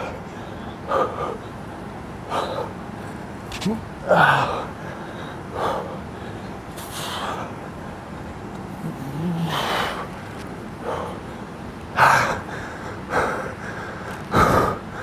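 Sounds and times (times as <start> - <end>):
person grunting: 3.6 - 4.7, 8.8 - 10.0.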